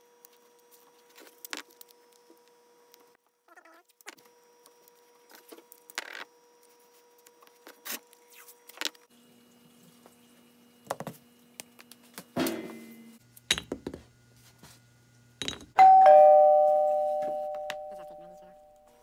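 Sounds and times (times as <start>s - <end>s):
two-tone ding-dong chime: 15.8s - 18.8s.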